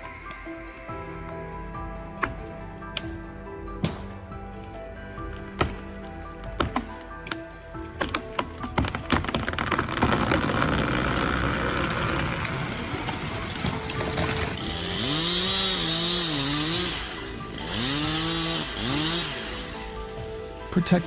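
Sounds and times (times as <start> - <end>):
chainsaw revving: 9.9 - 19.9.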